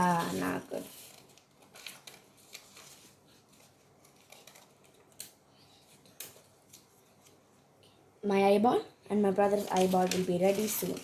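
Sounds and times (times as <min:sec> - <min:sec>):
scissors cutting paper: 0:09.5 - 0:11.0.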